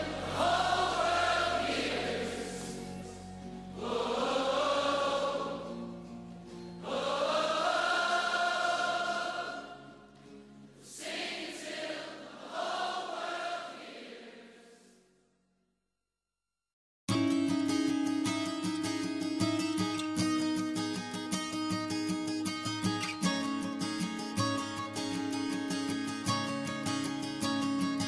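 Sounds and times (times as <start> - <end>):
voices singing wordless notes: 0.0 - 6.1, 6.7 - 10.1, 10.8 - 15.0
worship music: 0.0 - 14.6.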